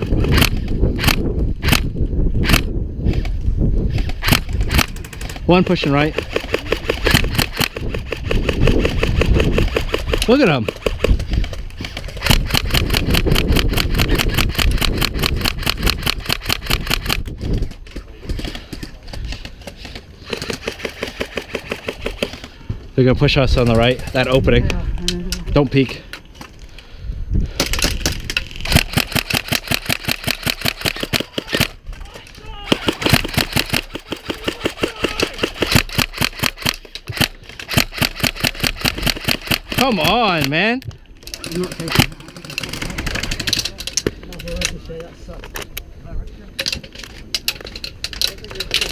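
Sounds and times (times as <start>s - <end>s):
wind rumble on microphone: 0.0s - 19.4s, 26.9s - 29.4s
airsoft rifle full-auto bursts: 4.2s - 17.2s, 28.5s - 31.8s, 32.9s - 40.6s.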